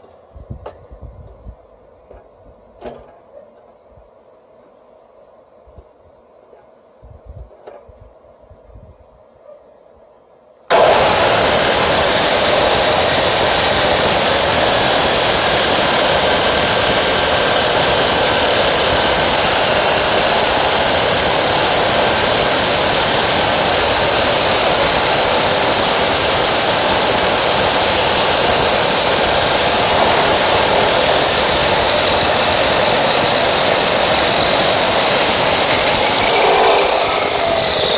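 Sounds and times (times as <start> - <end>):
chop saw motor whining: 10.7 - 37.9.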